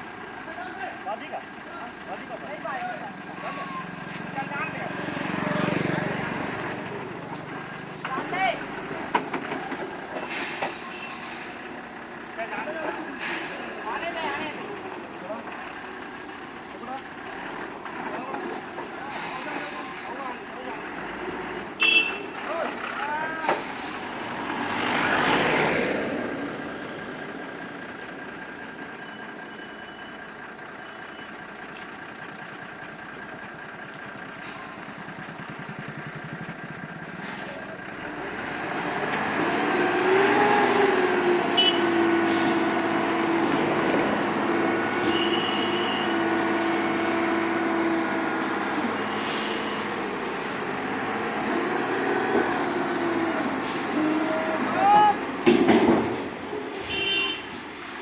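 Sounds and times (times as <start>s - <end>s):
diesel trucks running: 0.0s - 58.0s
truck passing: 0.0s - 58.0s.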